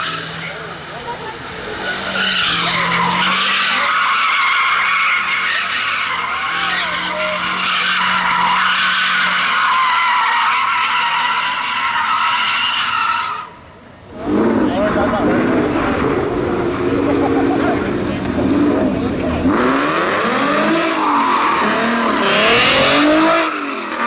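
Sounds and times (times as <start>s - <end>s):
tyres squealing on pavement: 0.0s - 24.0s
car engine running: 14.0s - 20.7s.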